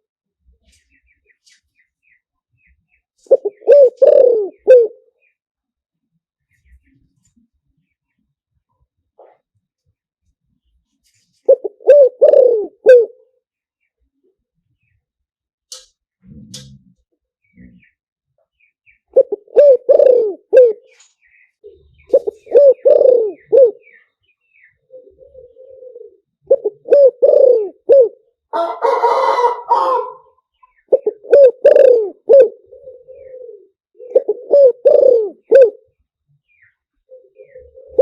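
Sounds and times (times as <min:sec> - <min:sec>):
dove cooing: 0:03.2 - 0:05.2, 0:11.4 - 0:13.3, 0:19.1 - 0:20.9, 0:21.6 - 0:35.9, 0:37.0 - 0:38.0.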